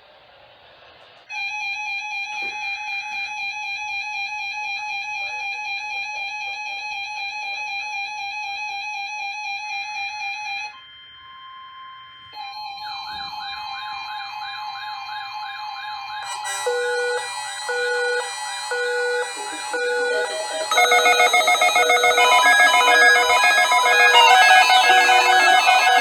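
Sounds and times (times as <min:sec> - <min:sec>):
loud steady electronic alarm tone: 0:01.3 - 0:26.0
quieter warning alarm tone: 0:10.8 - 0:26.0
radio hiss: 0:16.3 - 0:26.0.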